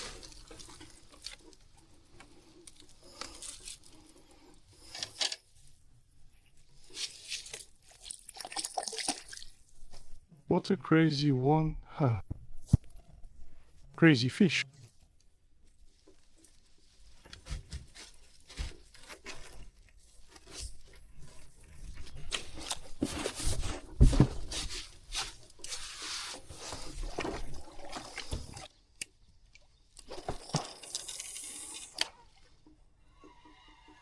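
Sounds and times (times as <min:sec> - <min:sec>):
handling rustling and scraping: 0:00.0 - 0:08.4, 0:14.8 - 0:28.8.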